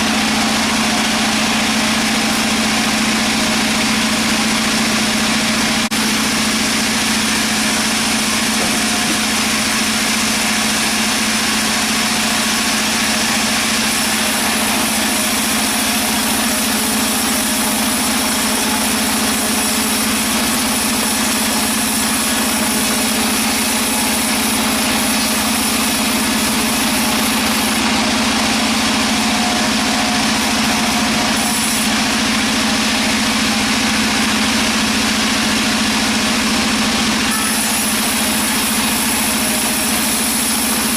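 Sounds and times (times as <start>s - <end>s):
sawmill machinery droning: 0.0s - 40.9s.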